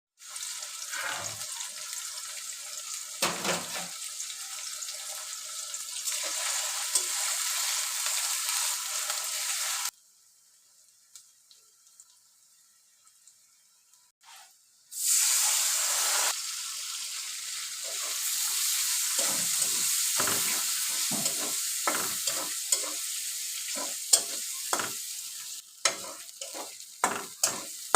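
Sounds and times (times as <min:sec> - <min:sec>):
food sizzling in frying pan: 0:00.2 - 0:27.9
stirring in pan: 0:17.8 - 0:27.9.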